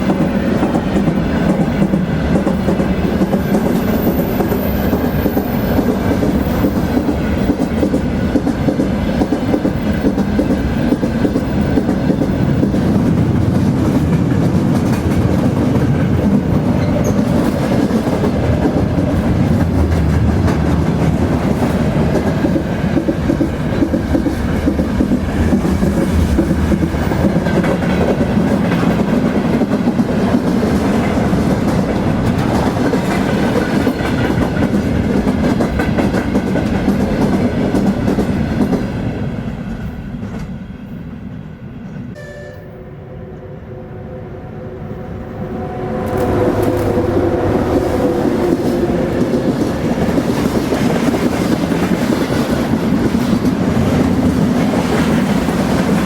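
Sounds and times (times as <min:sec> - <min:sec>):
train wheels rumbling on rail: 0:00.0 - 0:42.2, 0:44.8 - 0:56.0.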